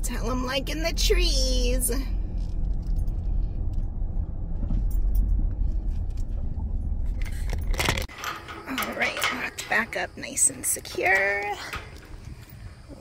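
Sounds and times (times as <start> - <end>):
minivan engine running: 0.0 - 8.1.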